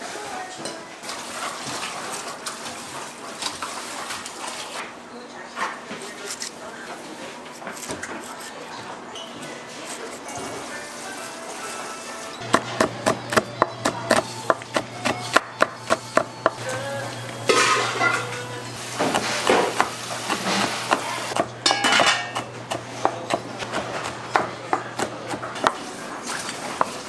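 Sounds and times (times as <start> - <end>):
dishes and utensils clattering: 0.4 - 4.8, 12.2 - 27.0
knife striking wooden cutting board: 19.0 - 25.8.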